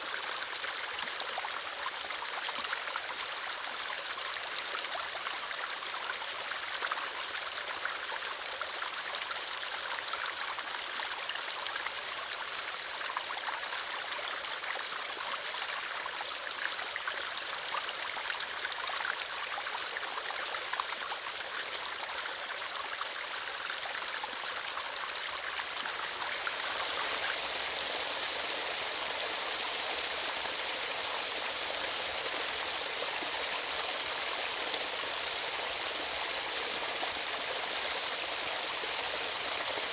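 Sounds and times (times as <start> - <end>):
stream water rushing: 22.6 - 39.9.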